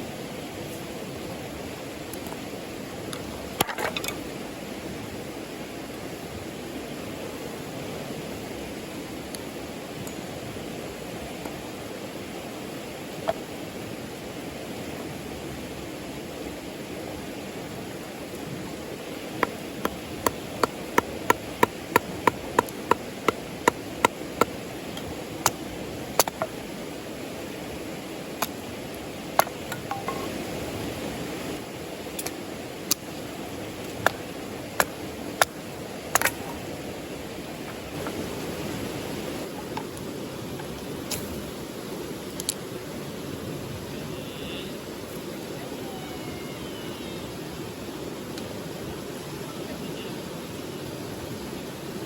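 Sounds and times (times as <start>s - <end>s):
river water rushing: 0.0s - 52.0s.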